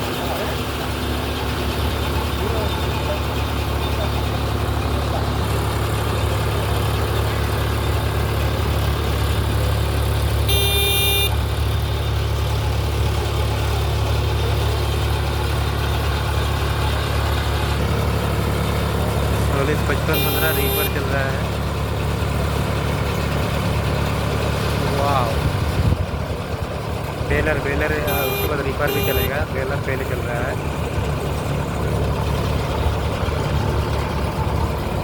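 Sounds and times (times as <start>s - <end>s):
tractor diesel engine rumble: 0.0s - 35.0s.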